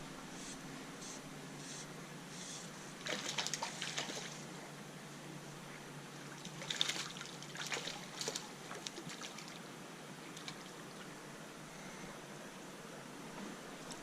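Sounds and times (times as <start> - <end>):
creek water trickling: 2.4 - 4.6, 6.1 - 11.4.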